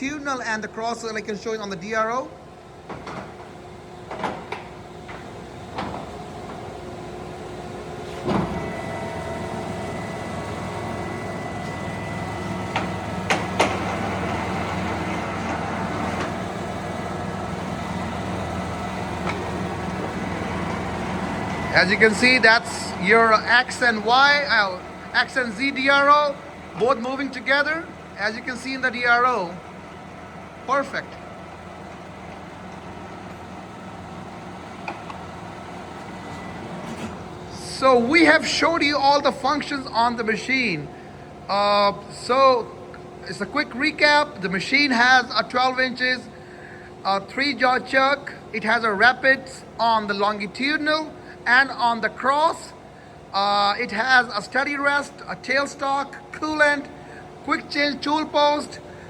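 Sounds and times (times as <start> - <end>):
lathe running with geared hum: 0.0 - 59.0
lathe knock: 12.7 - 14.2.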